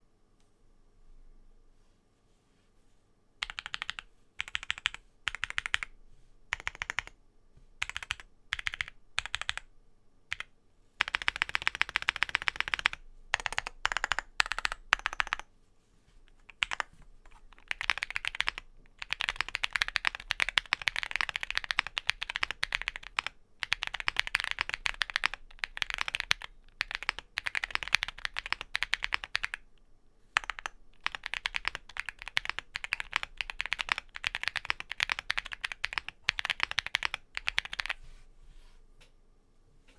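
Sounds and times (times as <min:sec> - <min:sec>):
mechanical keyboard typing: 0:03.4 - 0:05.9, 0:06.5 - 0:07.2, 0:07.8 - 0:09.7, 0:10.3 - 0:15.5, 0:16.4 - 0:29.7, 0:30.4 - 0:38.0.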